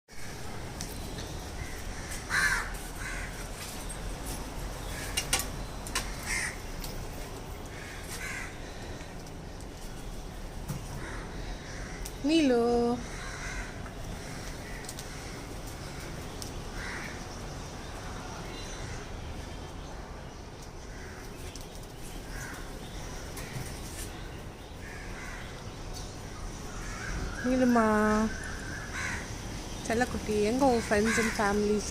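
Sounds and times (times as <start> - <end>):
outdoor background noise: 0.1 - 31.9
crows cawing: 1.6 - 3.6, 6.0 - 6.8, 7.7 - 9.2, 10.9 - 12.2, 13.0 - 17.4, 20.9 - 21.4, 22.2 - 23.7, 24.8 - 25.7, 26.7 - 27.4, 28.3 - 29.4, 30.7 - 31.8.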